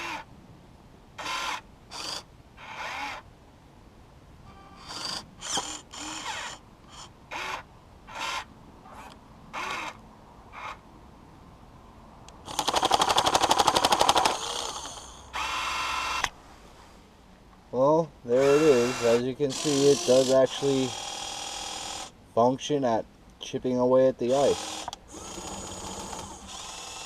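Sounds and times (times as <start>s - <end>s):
electric motors whining: 0.0s - 0.2s, 4.5s - 10.0s, 14.3s - 16.3s, 18.4s - 22.1s, 24.4s - 27.0s
jackhammer chattering on ice: 18.4s - 21.2s.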